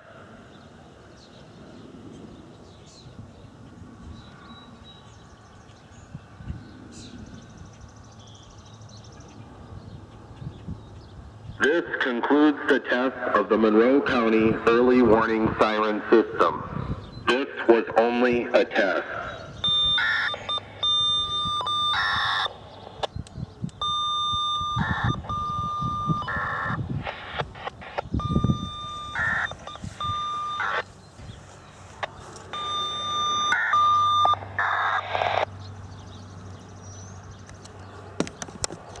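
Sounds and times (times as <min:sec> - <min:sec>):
high carrier tone: 0:18.6 - 0:23.0, 0:23.8 - 0:35.5
warbling data bursts: 0:19.6 - 0:23.0, 0:23.8 - 0:35.5.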